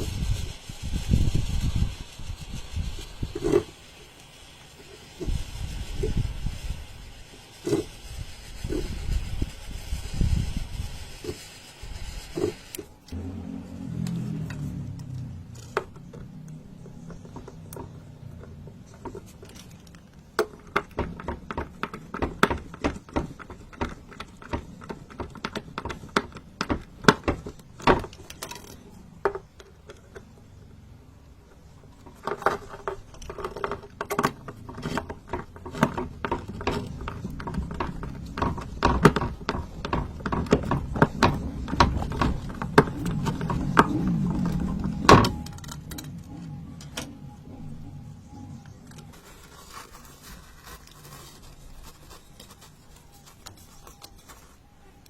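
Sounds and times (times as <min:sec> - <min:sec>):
objects clicking and knocking: 0:14.0 - 0:30.6, 0:31.9 - 0:47.8.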